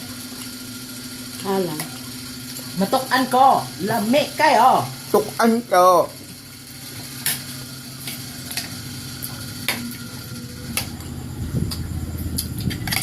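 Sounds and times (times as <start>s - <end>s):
low hum: 8.8s - 13.0s
utensils clinking on dishes: 12.4s - 13.0s.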